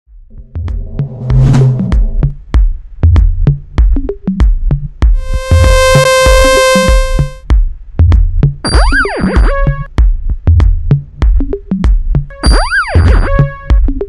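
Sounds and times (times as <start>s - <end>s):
drum machine beat: 2.0s - 14.0s
held synthesizer note: 5.2s - 7.4s
rising and falling synth sweep: 5.2s - 7.4s.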